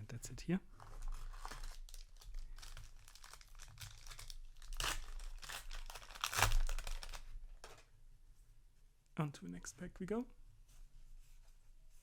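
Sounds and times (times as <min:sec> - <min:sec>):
foil wrapper crinkling: 0:00.8 - 0:07.3.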